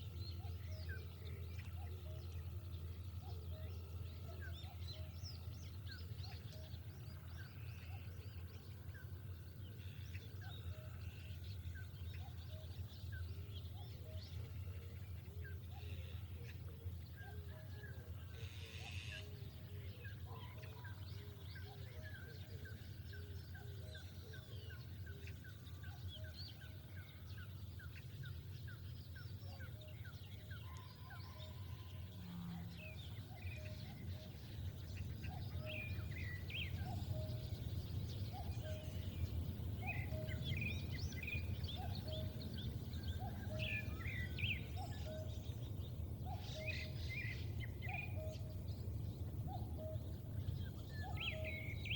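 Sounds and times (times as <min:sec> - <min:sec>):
birds high chirps: 0:00.0 - 0:51.9
steady low rumble: 0:22.4 - 0:51.9.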